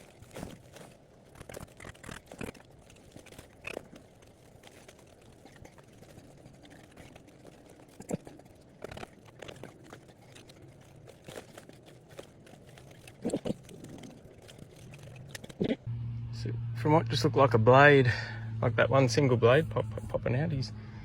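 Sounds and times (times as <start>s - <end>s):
crumbling rock crunches: 0.0s - 15.9s.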